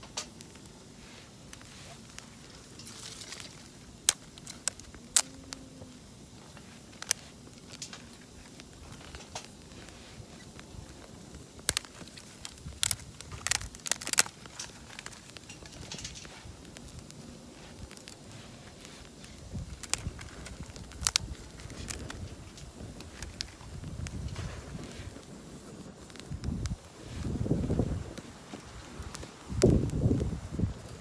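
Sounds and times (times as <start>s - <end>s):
campfire crackling and popping: 0.0s - 31.0s
fire hissing: 0.0s - 31.0s.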